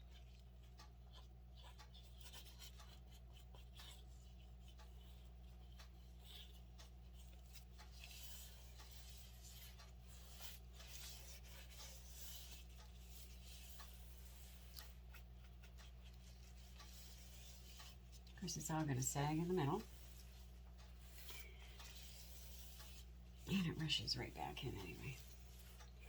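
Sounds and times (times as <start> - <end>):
light ticks: 0.0 - 26.0
steady low hum: 0.0 - 26.0
faint rubbing: 6.2 - 26.0.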